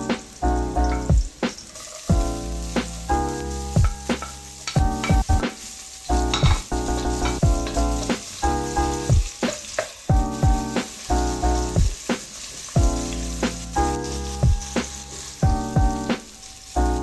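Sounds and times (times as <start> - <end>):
music with drum beat: 0.0 - 17.0.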